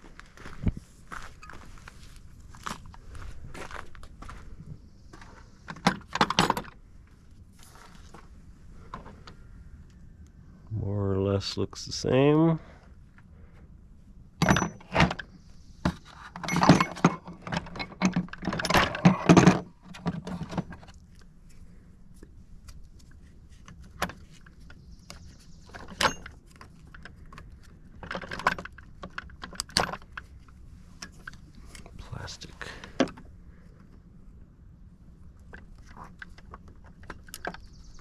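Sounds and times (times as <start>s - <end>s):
metal tools clinking and rattling: 14.4s - 15.2s, 16.0s - 20.7s, 25.6s - 27.1s.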